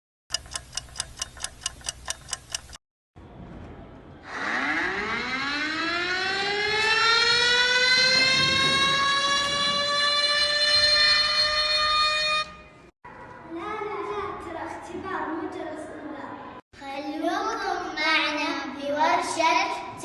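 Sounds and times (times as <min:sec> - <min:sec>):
rapid sharp ticks: 0:00.3 - 0:02.8
air-raid siren winding up: 0:04.2 - 0:12.6.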